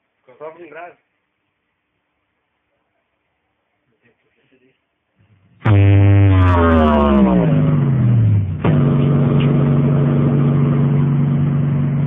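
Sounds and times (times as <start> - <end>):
deep buzzing tone gliding down: 5.4 - 12.0
steady engine-like drone: 5.7 - 12.0.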